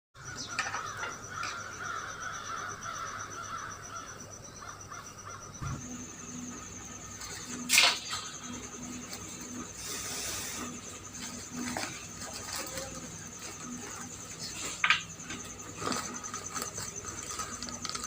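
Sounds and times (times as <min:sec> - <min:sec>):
crows cawing: 0:00.2 - 0:05.7.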